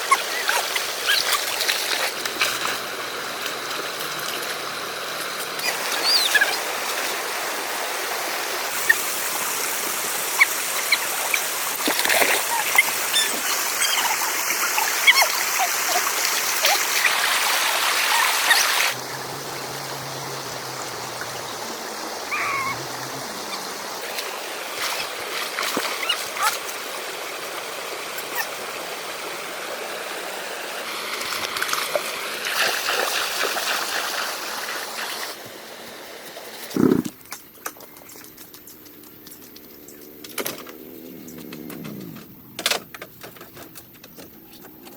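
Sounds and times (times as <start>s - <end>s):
river water flowing: 0.0s - 36.5s
small splashes and clicks: 0.1s - 4.6s, 8.7s - 17.2s, 37.2s - 44.9s.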